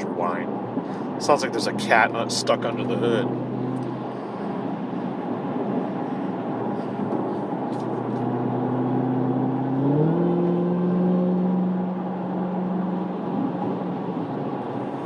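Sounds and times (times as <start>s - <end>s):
car engine revving: 1.5s - 13.5s.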